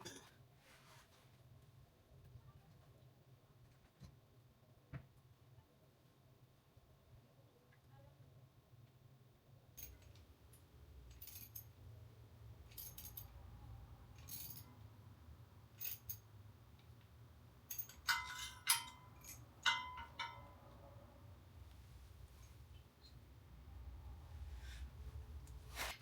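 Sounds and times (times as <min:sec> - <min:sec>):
small metal objects clinking: 0:15.8 - 0:16.2, 0:17.7 - 0:20.5.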